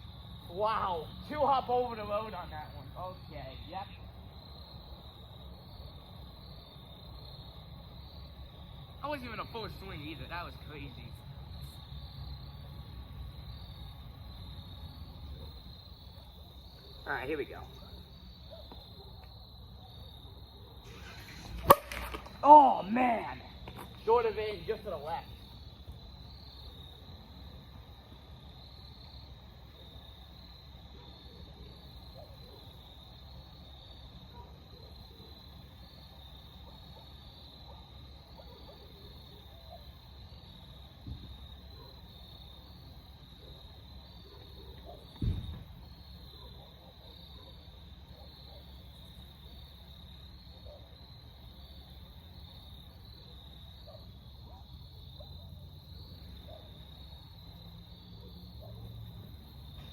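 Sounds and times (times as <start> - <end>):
insects chirping: 0.0 - 59.9
dull thumps: 45.2 - 45.7.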